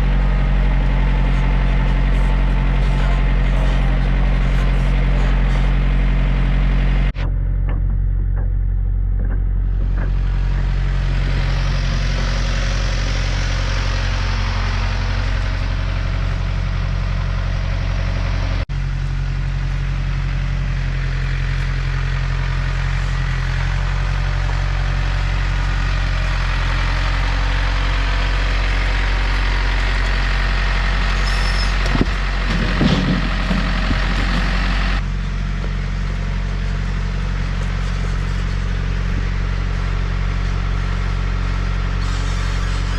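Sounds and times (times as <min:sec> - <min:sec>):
small diesel engine running: 0:00.0 - 0:42.9
knocks and clatter: 0:07.2 - 0:12.8, 0:31.7 - 0:34.7.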